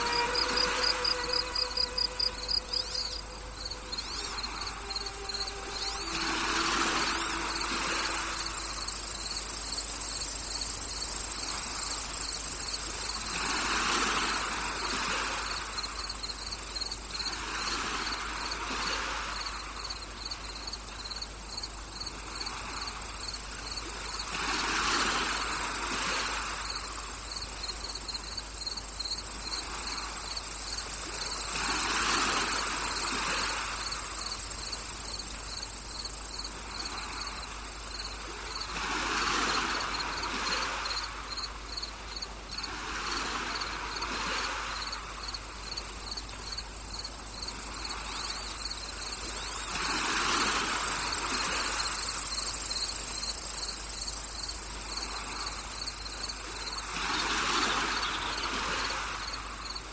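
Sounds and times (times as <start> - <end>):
soft rushing swells: 0.0 - 15.1
insects chirring: 0.0 - 59.9.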